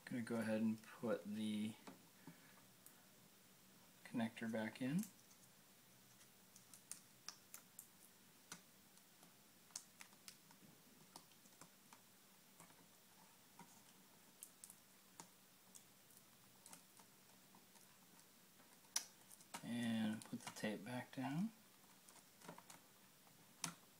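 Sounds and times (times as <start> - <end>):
small clicks and taps: 13.6 - 20.6, 21.8 - 23.8.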